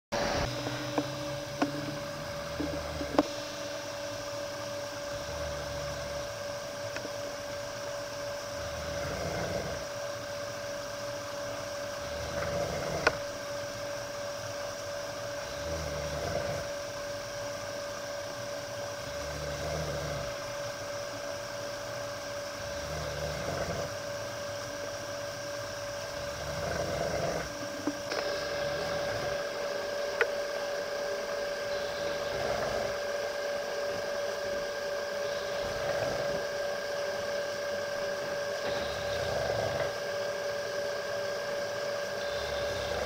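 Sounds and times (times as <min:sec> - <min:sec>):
steady hum: 0:00.1 - 0:43.0
pet snoring: 0:00.2 - 0:03.4, 0:05.0 - 0:07.2, 0:08.2 - 0:10.0, 0:11.8 - 0:13.4, 0:15.2 - 0:17.2, 0:18.9 - 0:20.9, 0:21.7 - 0:24.4, 0:26.0 - 0:43.0.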